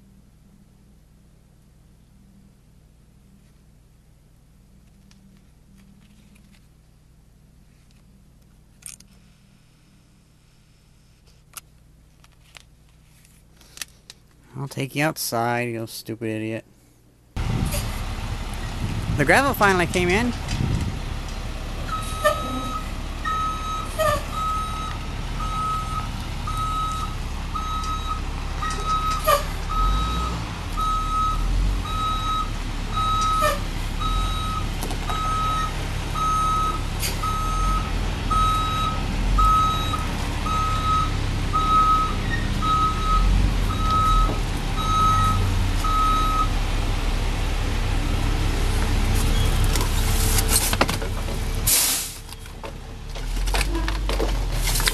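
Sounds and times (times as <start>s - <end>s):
diesel engine running: 17.4s - 54.9s
reversing alarm beeping: 21.9s - 46.6s.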